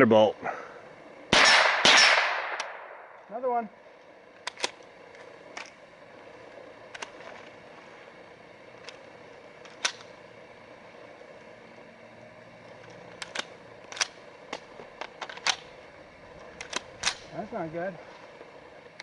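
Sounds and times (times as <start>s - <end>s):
rifle shots: 1.3s - 3.2s.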